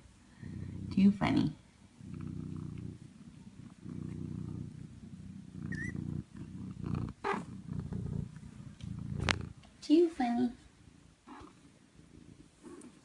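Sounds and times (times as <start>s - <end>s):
cat purring: 0.0s - 13.0s
cat chirp: 5.7s - 6.0s.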